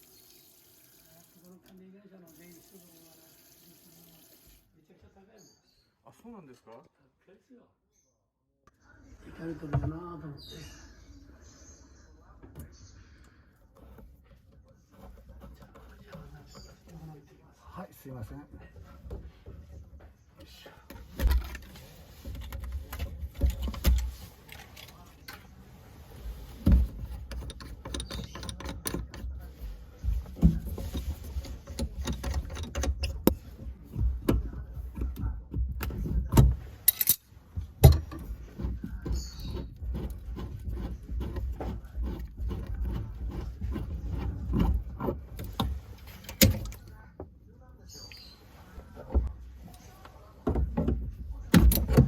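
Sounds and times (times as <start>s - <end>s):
metal tools clinking and clattering: 36.8s - 37.2s.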